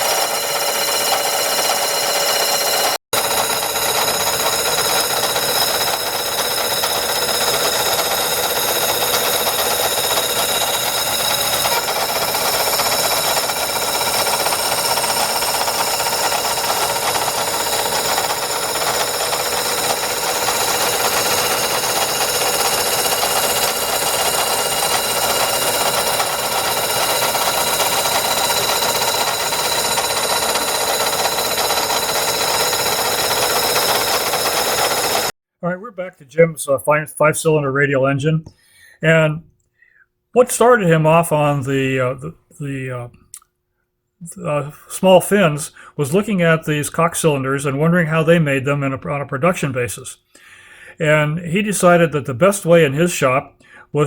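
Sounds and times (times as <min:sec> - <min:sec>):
machine whining: 0:00.0 - 0:35.3.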